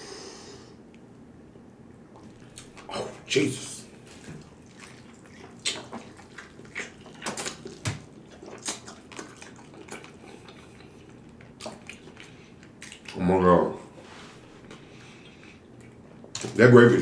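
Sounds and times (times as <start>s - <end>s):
wet chewing and mouth smacks: 2.1s - 3.3s, 3.9s - 13.2s, 13.9s - 16.6s.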